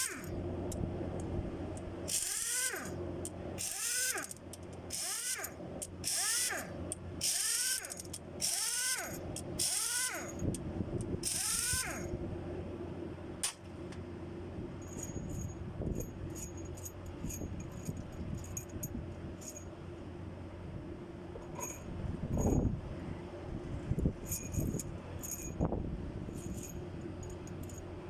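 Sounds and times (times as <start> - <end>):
small motor spinning up: 0.0 - 0.3, 2.1 - 3.0, 3.6 - 10.5, 11.2 - 12.1.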